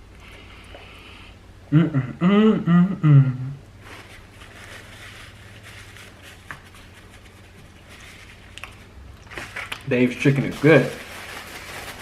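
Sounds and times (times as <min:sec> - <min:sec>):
man making wavering vocal sound: 0:01.7 - 0:03.7.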